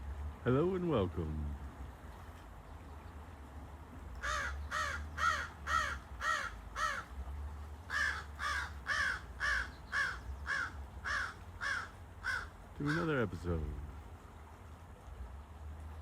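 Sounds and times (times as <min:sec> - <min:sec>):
crows cawing: 0:04.2 - 0:07.1, 0:07.9 - 0:13.1.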